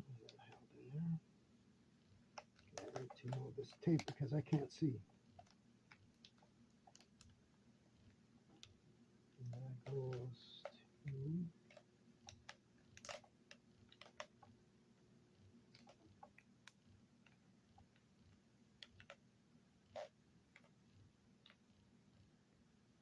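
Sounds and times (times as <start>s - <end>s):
light clicks and taps on laptop parts: 2.3s - 4.6s, 9.4s - 14.6s.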